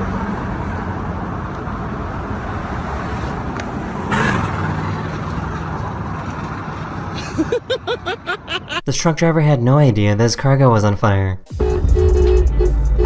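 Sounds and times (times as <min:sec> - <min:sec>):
road vehicle driving: 0:00.0 - 0:08.8.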